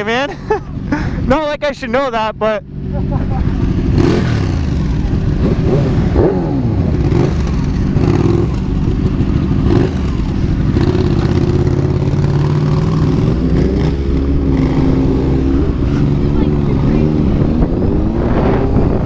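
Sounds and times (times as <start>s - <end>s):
motorcycle engines revving: 0.0s - 19.0s.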